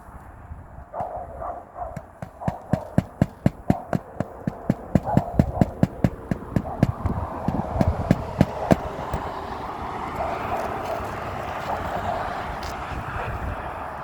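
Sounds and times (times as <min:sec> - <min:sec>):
background rumble: 0:00.0 - 0:10.8
hammer knocking on roofing: 0:02.0 - 0:09.6.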